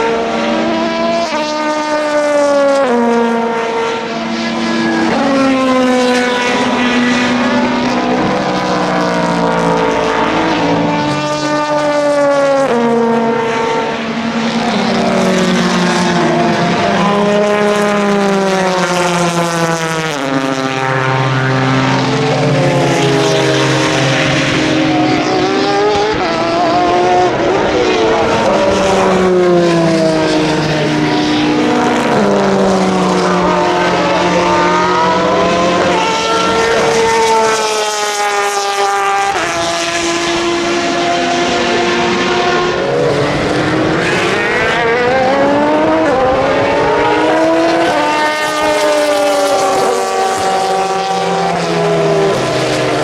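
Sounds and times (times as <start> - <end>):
race car engines changing gear: 0.0 - 53.0
racing cars passing at speed: 0.0 - 53.0.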